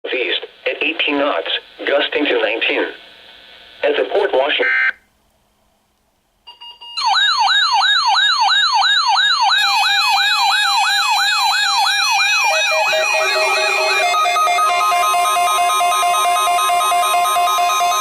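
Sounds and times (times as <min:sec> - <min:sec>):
electronic siren wail: 0:06.5 - 0:18.0.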